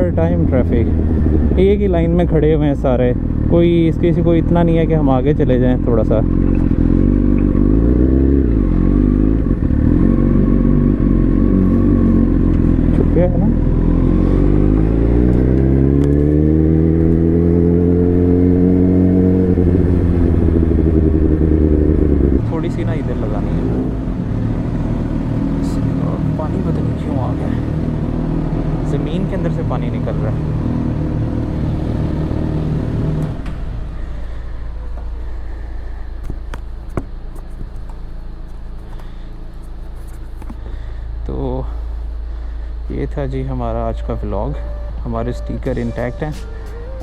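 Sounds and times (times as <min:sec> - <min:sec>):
motorcycle engine idling: 0:00.0 - 0:07.9, 0:33.6 - 0:43.5
muffled motorcycle engine accelerating: 0:00.0 - 0:41.1.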